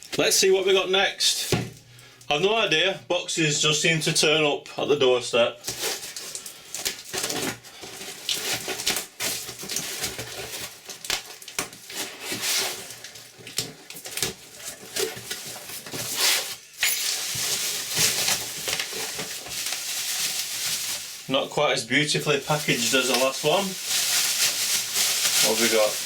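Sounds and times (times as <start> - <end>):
packing tearing: 5.6 - 21.3, 22.1 - 26.0
cardboard parcel rustling: 5.6 - 26.0.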